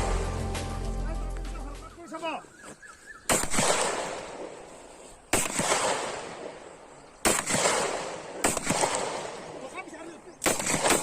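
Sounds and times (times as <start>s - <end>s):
pistol shots echoing: 3.3s - 4.6s, 5.3s - 11.0s.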